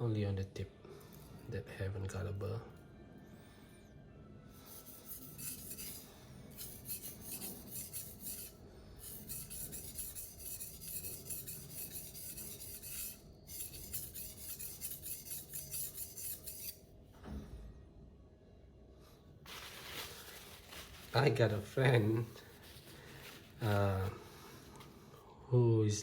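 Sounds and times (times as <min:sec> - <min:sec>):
knife scraping on whetstone: 0:04.7 - 0:16.8.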